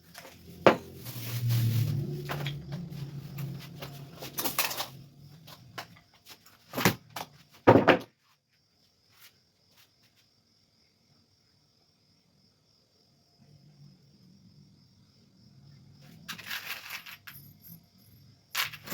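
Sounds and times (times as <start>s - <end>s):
loud knocks: 7.6s - 8.1s.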